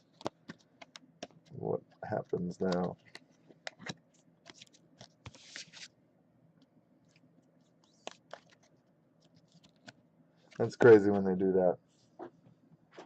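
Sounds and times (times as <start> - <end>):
card rustle: 0.0 - 5.9, 7.1 - 11.3
trading cards clicking: 2.6 - 4.0.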